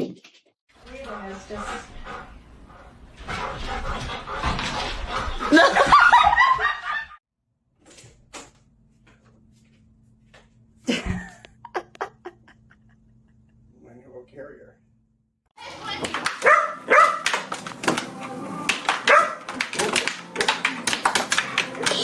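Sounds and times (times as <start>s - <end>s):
laughter: 5.4s - 7.2s, 10.9s - 13.7s.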